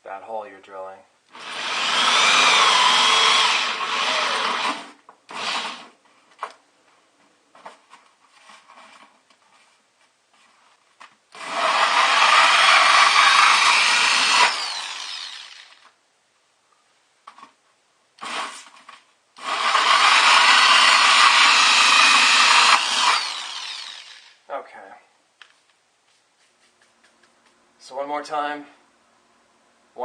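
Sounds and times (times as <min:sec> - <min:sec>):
power drill hole saw cutting foam: 0:01.3 - 0:05.9, 0:11.3 - 0:15.9, 0:18.2 - 0:18.7, 0:19.4 - 0:24.4.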